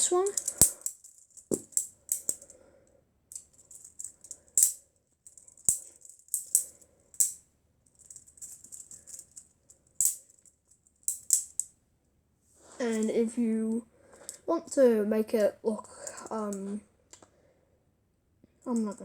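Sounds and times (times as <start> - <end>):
plastic butterfly knife clattering: 0.0 - 2.5, 3.3 - 7.4, 8.0 - 9.4, 10.0 - 11.7.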